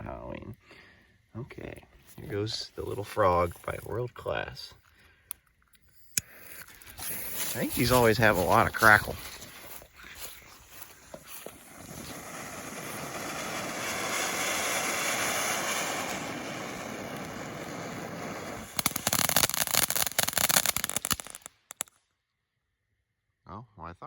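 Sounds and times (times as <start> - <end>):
firework hissing: 6.0 - 21.9
firework crackling: 6.1 - 21.9.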